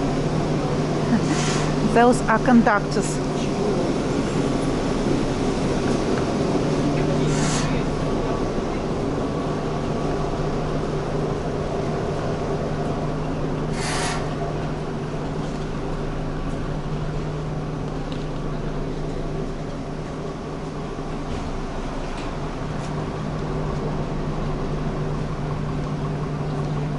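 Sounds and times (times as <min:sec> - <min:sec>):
electric train running noise: 0:00.0 - 0:26.9
low hum: 0:00.0 - 0:26.9
short hiss: 0:13.8 - 0:14.3.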